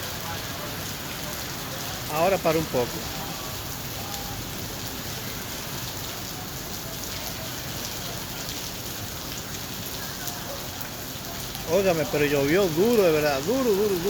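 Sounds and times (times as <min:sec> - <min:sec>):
rain pattering on street: 0:00.0 - 0:14.0.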